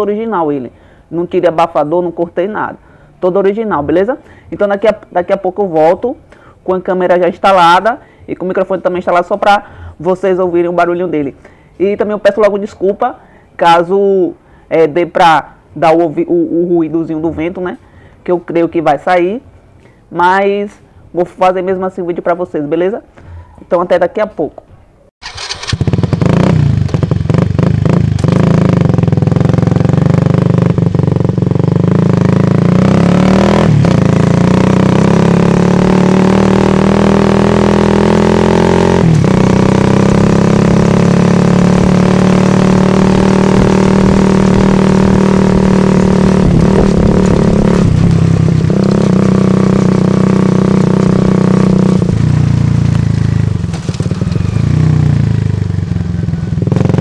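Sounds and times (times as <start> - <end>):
small motorcycle engine revving: 25.2 - 57.0.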